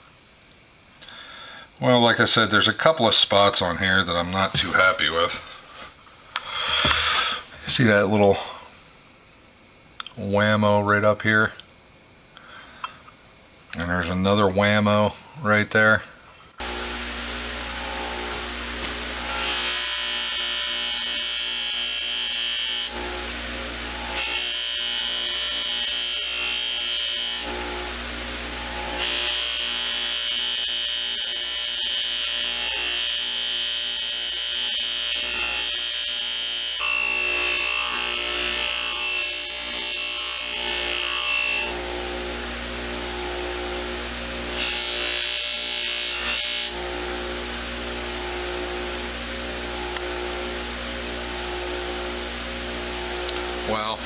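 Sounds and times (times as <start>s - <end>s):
rotary tool polishing metal: 16.6s - 54.0s.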